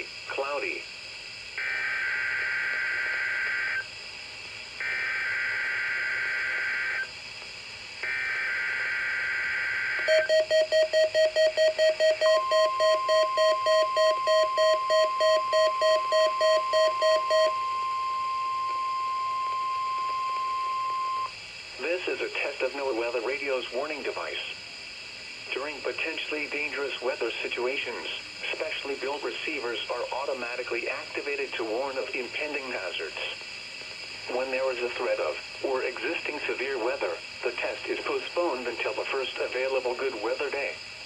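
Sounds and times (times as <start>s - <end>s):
steady warning alarm tone: 4.8s - 7.1s, 8.0s - 21.4s
rapid electronic beeping: 10.0s - 21.3s.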